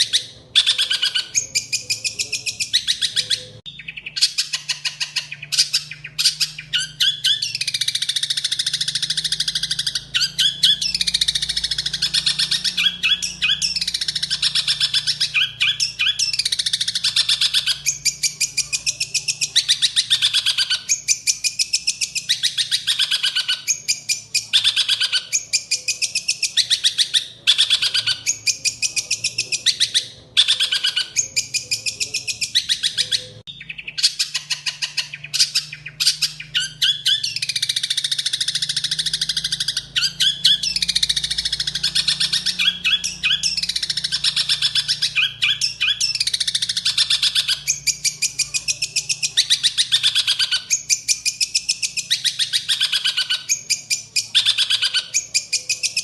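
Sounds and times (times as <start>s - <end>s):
songbird singing: 0.0s - 56.0s.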